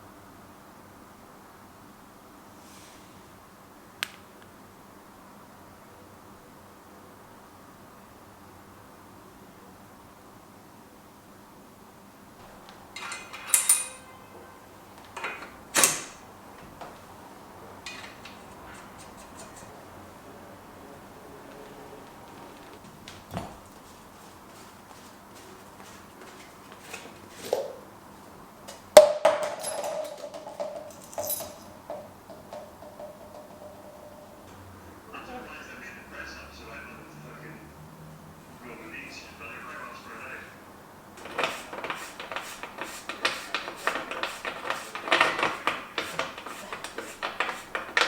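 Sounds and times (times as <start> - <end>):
light clicks and clatters of tools: 12.7 - 14.1, 17.8 - 19.8
clear ringing tone: 33.6 - 34.5.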